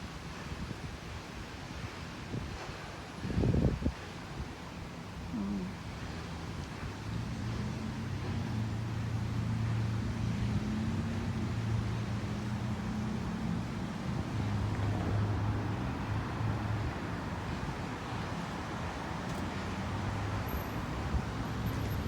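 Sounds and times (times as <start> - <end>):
street traffic: 5.2 - 22.0.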